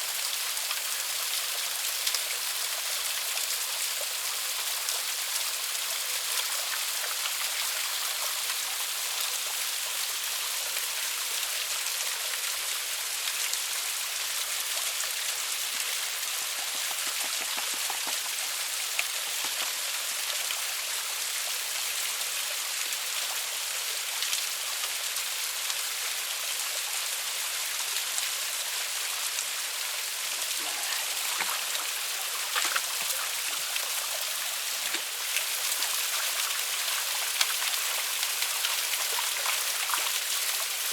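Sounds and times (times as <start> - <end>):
small waterfall rushing: 0.0 - 40.9
faint splashes or knocks: 30.9 - 33.3.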